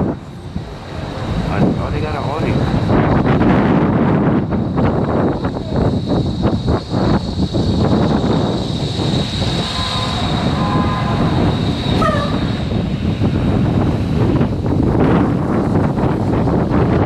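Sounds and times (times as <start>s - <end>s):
wind rumbling on microphone: 0.0s - 17.0s
thin high whine: 4.8s - 14.6s.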